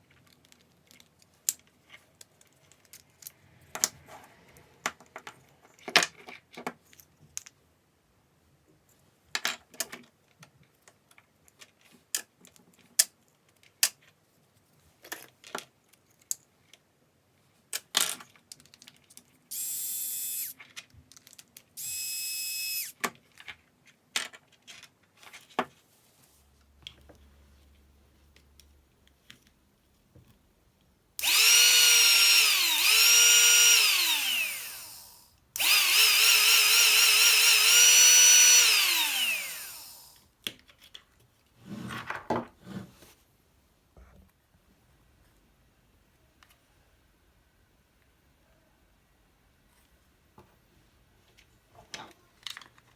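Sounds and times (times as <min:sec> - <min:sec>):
small parts clicking: 0:17.7 - 0:23.1, 0:31.2 - 0:41.0
power tool motor whirring: 0:19.5 - 0:20.6, 0:21.8 - 0:23.0, 0:31.2 - 0:40.2.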